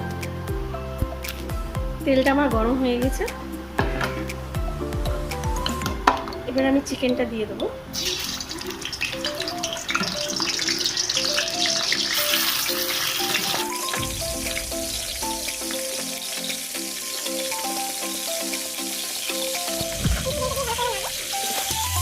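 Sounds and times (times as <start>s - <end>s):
background music: 0.0s - 22.0s
chicken sizzling in hot oil: 7.9s - 22.0s.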